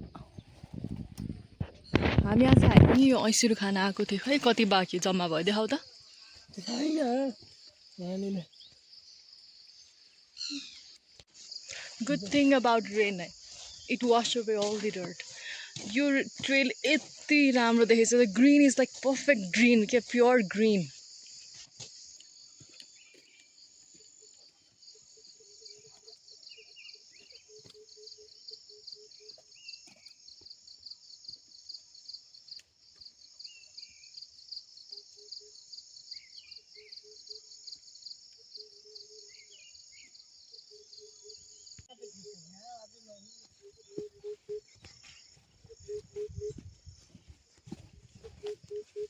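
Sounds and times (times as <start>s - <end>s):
repeating low insect call: 0.0s - 49.0s
insects buzzing: 1.8s - 49.0s
bird chirps: 4.0s - 12.6s, 34.9s - 37.8s, 38.4s - 47.3s, 47.9s - 49.0s.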